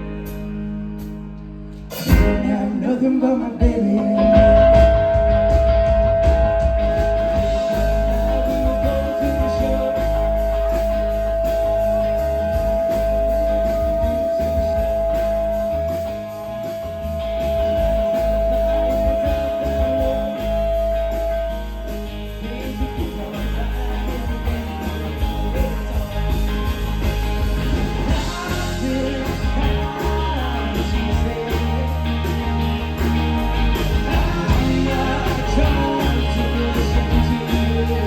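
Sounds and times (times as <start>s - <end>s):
rock band playing instrumental: 0.0s - 38.0s.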